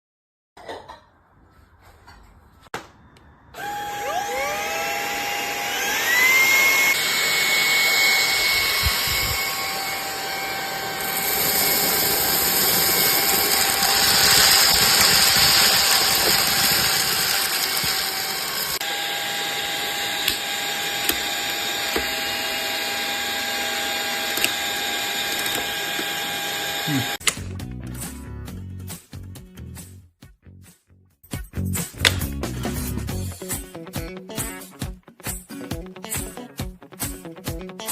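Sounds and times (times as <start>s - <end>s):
vacuum cleaner motor whining: 3.6s - 27.2s.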